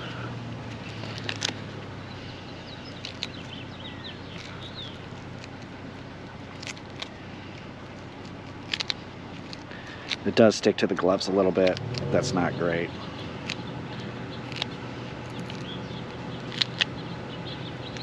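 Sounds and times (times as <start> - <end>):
birds chirping: 0.0 - 18.0
steady low hum: 0.0 - 18.0
sharp small clicks: 0.8 - 1.6, 2.9 - 5.7, 6.4 - 10.3, 13.4 - 18.0.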